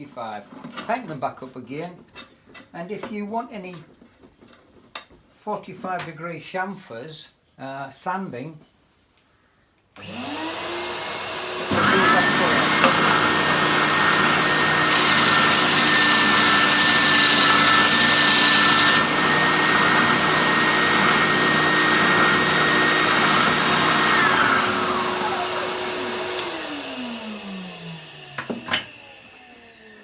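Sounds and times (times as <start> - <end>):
motor winding down: 10.0 - 30.0
sander motor hum: 10.0 - 30.0
sanding hiss: 14.8 - 19.1.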